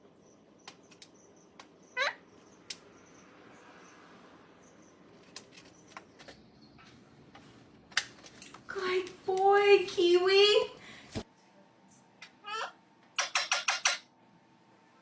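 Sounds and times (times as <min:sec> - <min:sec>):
parrot chirp: 0:01.2 - 0:03.3.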